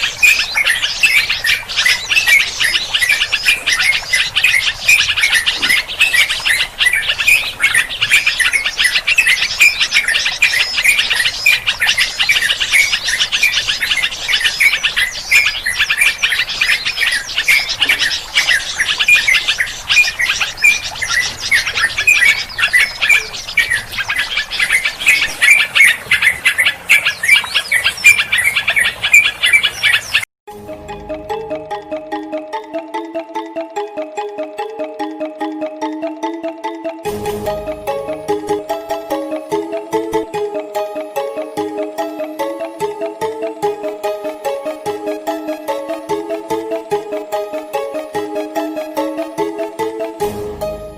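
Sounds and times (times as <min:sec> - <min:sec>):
many small birds chirping: 0:00.0 - 0:30.3.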